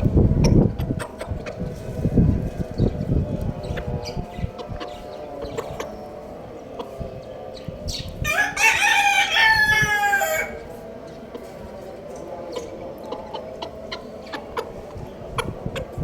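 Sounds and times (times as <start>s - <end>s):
rooster crowing: 8.2s - 10.6s.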